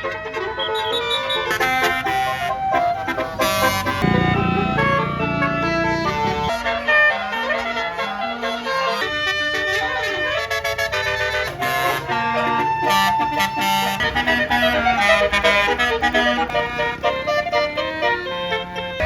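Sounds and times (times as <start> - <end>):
musical air horn melody: 1.0 - 18.2
low rumble: 4.0 - 7.0.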